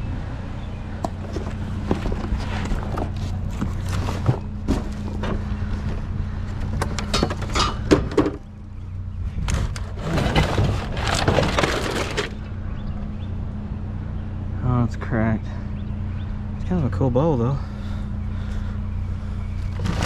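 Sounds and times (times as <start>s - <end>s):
low engine hum: 0.0s - 20.0s
junk scraping and rustling: 0.8s - 13.3s, 17.6s - 20.0s
hard objects clattering: 6.6s - 8.5s, 9.5s - 12.6s.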